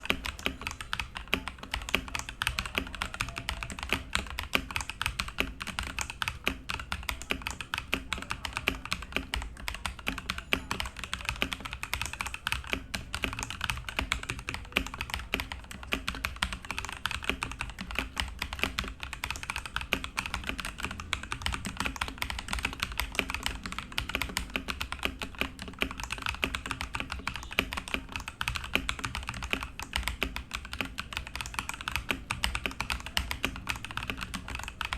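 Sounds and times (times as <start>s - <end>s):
fast typing on mechanical keyboard: 0.0s - 34.9s.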